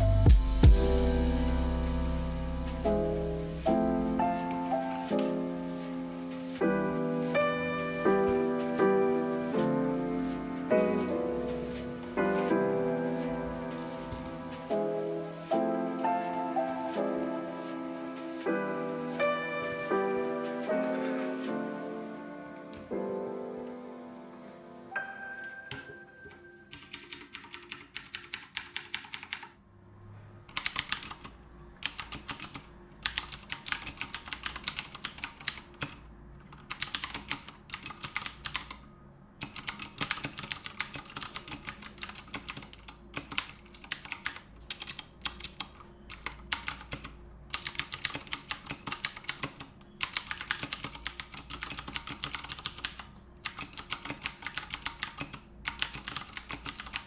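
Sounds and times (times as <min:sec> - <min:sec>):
clicky mechanical keyboard typing: 0:25.4 - 0:29.5, 0:30.5 - 0:38.8, 0:39.4 - 0:57.0.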